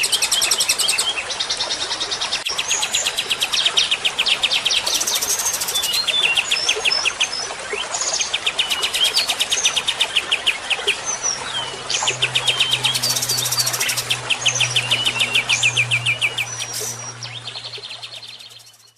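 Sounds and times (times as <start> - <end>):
songbird trills: 2.5 - 18.9.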